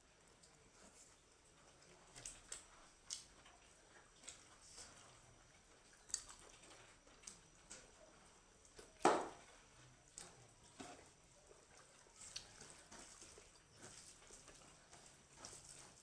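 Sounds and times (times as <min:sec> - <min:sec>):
person chewing with wet mouth sounds: 0:10.1 - 0:16.0.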